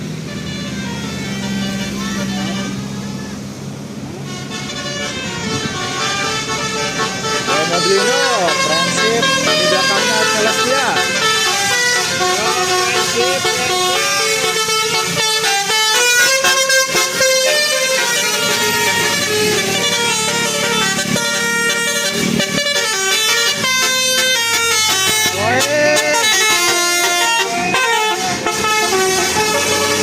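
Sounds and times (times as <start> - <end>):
multi-tone bus horn tune: 0.0 - 3.5, 4.1 - 30.0.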